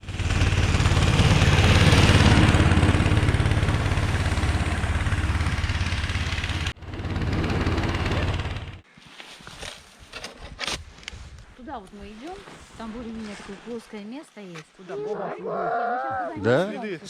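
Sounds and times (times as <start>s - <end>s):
small engine running: 0.0s - 8.8s.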